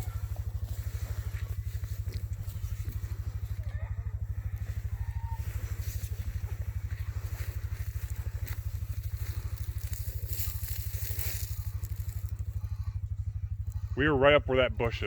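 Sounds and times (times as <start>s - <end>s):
engine idling: 0.0s - 15.0s
crackling and rustling: 4.2s - 12.8s.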